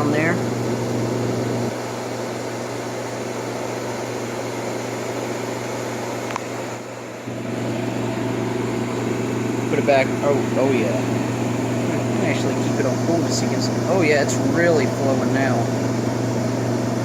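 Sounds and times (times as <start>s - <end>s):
low compressor hum: 0.0s - 4.1s, 6.5s - 17.0s
air conditioner fan blowing: 0.0s - 17.0s
small click: 6.2s - 6.5s.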